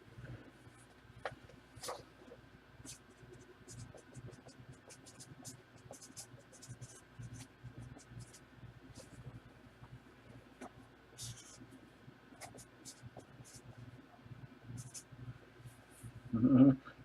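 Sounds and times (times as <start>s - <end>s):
pen scratching on paper: 1.8s - 2.1s, 2.8s - 9.3s, 10.6s - 11.6s, 12.4s - 13.7s, 14.8s - 15.0s.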